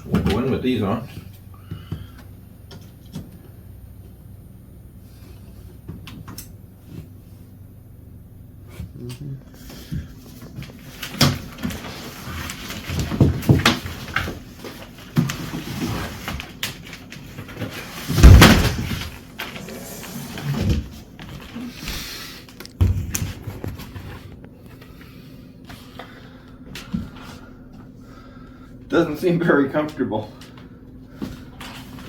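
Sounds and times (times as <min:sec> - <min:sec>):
heavy thump: 0:18.1 - 0:19.1.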